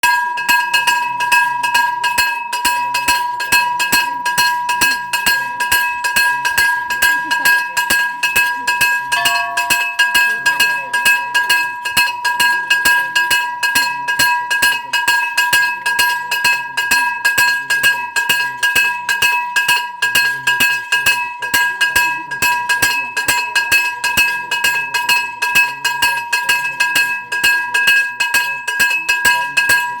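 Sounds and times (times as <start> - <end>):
hand bell ringing rapidly: 0.1 - 11.8.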